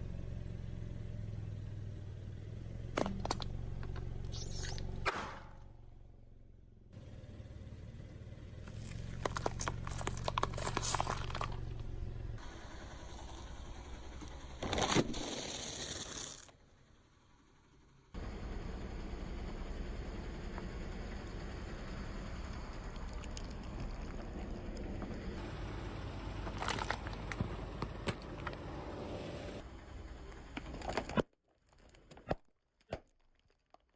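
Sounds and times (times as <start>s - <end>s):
low engine hum: 0.0s - 14.9s, 16.6s - 31.3s
low rumble of car: 0.0s - 15.6s, 16.3s - 31.3s
car crushing crunchy objects: 2.9s - 5.6s, 8.6s - 12.2s, 14.2s - 16.5s, 26.2s - 28.8s, 30.5s - 33.9s
tyres crushing objects: 2.9s - 5.6s, 8.7s - 11.9s
sharp crackles and snaps: 8.6s - 11.9s.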